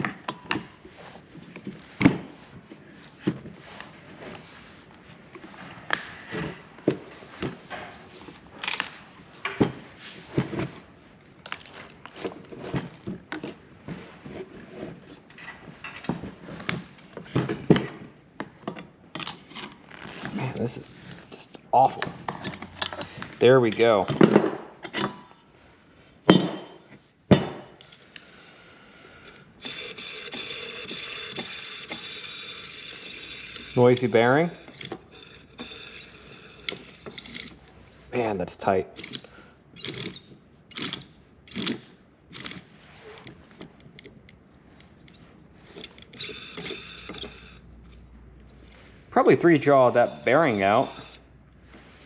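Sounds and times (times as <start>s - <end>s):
metal parts clinking: 1.6s - 2.1s, 8.5s - 10.1s, 11.2s - 12.7s
motor bearing rasping whir: 29.6s - 37.6s, 44.8s - 48.0s, 50.0s - 51.3s.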